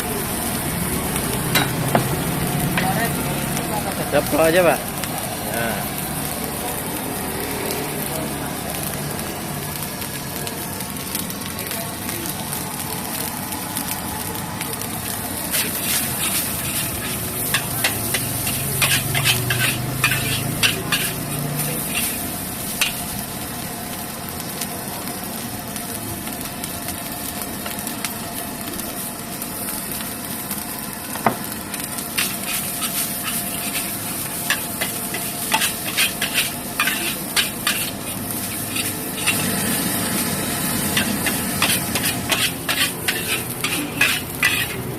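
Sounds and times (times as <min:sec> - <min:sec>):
rice sizzling in a wok: 0:00.0 - 0:44.9
spatula clacking on wok: 0:01.5 - 0:02.1, 0:15.8 - 0:22.2, 0:32.2 - 0:39.4, 0:40.9 - 0:44.8
metal spatula scraping wok: 0:15.5 - 0:23.1, 0:32.1 - 0:44.9.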